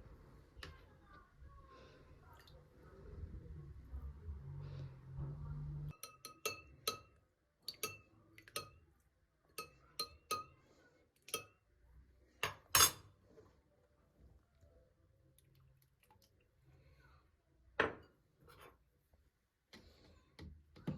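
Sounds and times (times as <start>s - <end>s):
dishes and glassware clinking: 9.6s - 10.6s, 12.4s - 13.1s.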